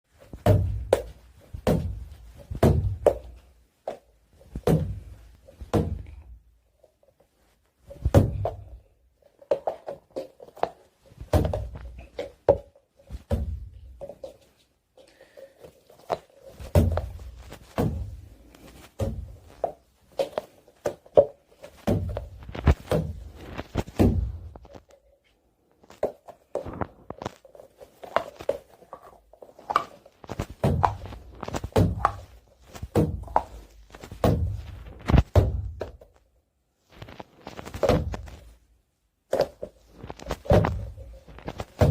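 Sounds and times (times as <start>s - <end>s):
sticky balls slapped and squished: 16.0s - 24.9s, 25.9s - 36.2s.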